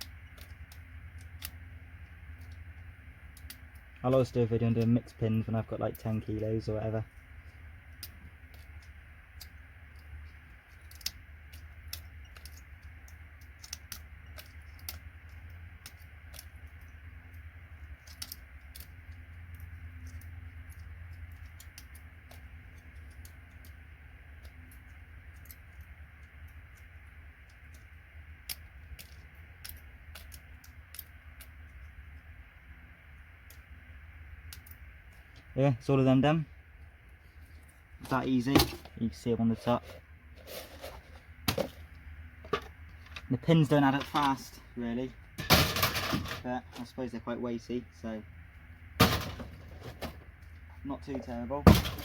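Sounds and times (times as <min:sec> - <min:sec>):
steady low hum: 0:00.0 - 0:52.0.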